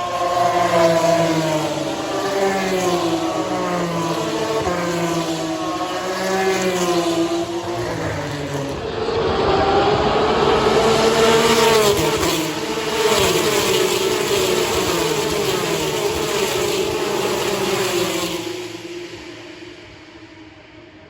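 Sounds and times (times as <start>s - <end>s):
race cars passing at high revs: 0.0s - 21.0s.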